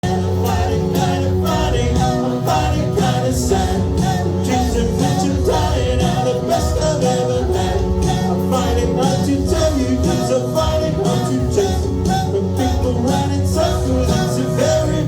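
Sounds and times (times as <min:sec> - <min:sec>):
singing over a steady beat: 0:00.0 - 0:15.0.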